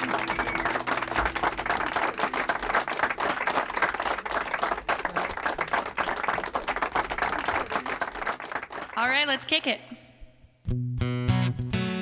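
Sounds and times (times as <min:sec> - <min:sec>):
audience applause: 0:00.0 - 0:09.0.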